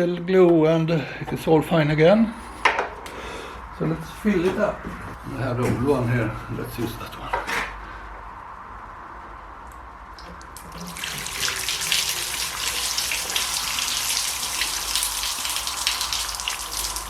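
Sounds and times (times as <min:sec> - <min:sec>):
water pouring into a container: 0:10.4 - 0:17.0.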